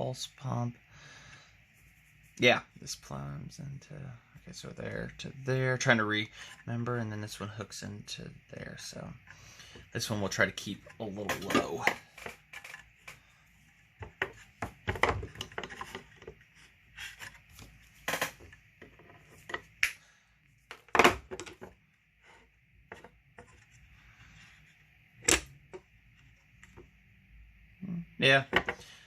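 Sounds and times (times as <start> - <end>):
small parts and tools clattering: 10.9 - 13.3, 14.0 - 16.4, 20.7 - 21.8.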